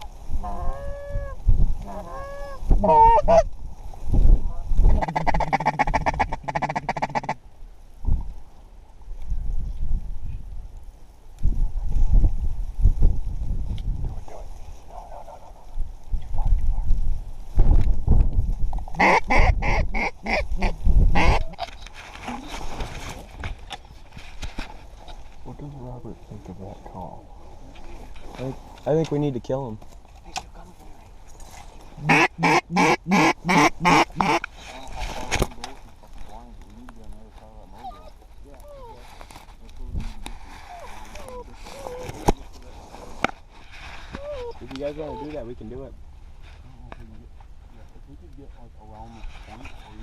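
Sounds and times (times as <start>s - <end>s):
goose honking: 0.4s - 3.5s, 4.9s - 7.4s, 19.0s - 21.7s, 32.0s - 34.5s
duck call quacks: 1.9s - 3.4s, 4.9s - 7.4s, 19.0s - 21.7s, 32.0s - 34.5s.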